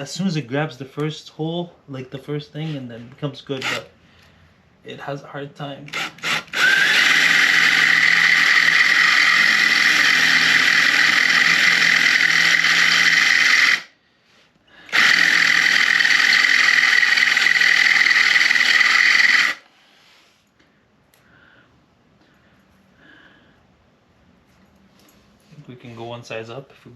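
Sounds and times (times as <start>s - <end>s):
electric drill boring: 3.6s - 3.9s, 5.9s - 14.0s, 14.8s - 19.7s.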